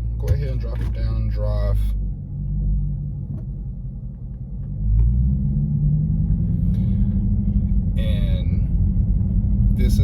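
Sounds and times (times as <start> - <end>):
car exhaust revving and cruising: 0.0 - 10.0.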